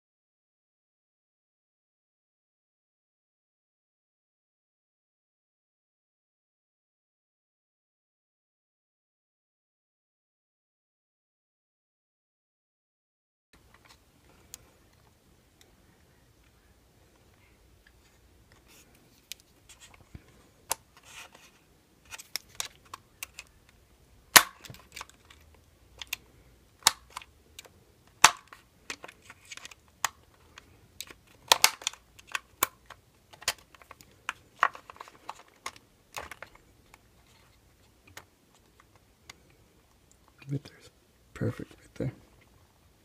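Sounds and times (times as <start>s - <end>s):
clicks and taps of small parts: 22.1s - 26.2s, 26.8s - 37.0s.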